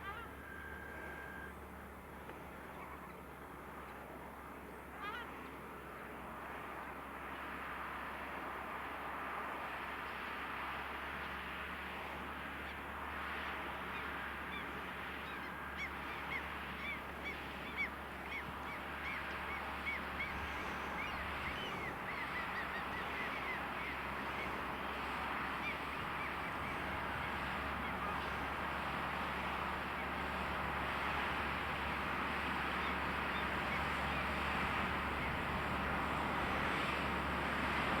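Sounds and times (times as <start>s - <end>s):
tractor low rumble: 0.0s - 38.0s
gulls calling: 13.8s - 37.0s.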